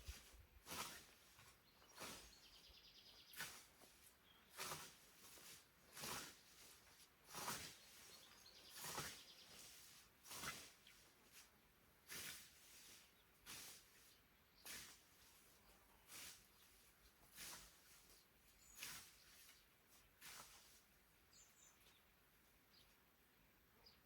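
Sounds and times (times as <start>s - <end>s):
scythe swishing through grass: 0.0s - 2.6s, 3.2s - 21.0s
bird chirping: 1.6s - 3.5s, 7.8s - 9.6s, 21.3s - 22.1s.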